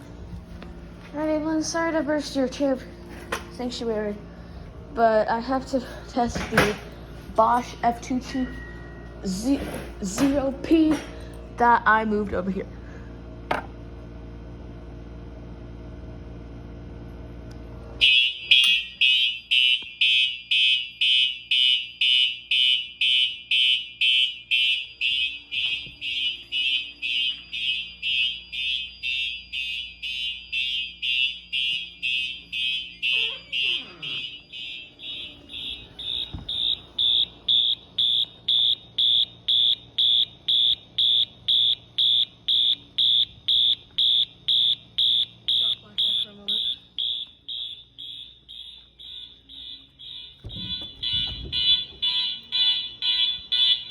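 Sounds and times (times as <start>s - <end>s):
low hum: 0.0s - 18.0s
fire alarm beeping: 5.4s - 11.3s, 18.0s - 53.9s.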